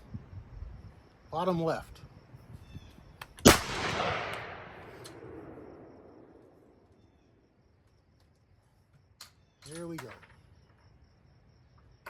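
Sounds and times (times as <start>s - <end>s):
gunshot with rolling echo: 3.4s - 6.9s.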